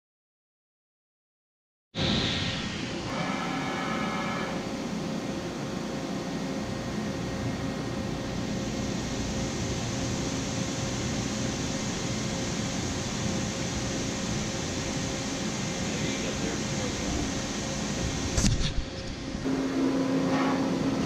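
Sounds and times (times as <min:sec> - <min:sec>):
hiss: 0:02.0 - 0:04.3
machine mechanical hum and whine: 0:02.0 - 0:21.0.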